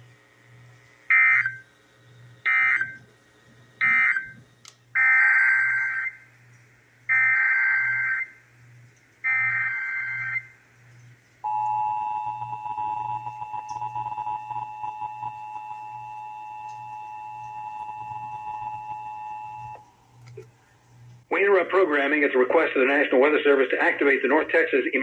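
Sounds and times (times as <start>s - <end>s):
two-tone attention signal: 11.5s - 19.8s.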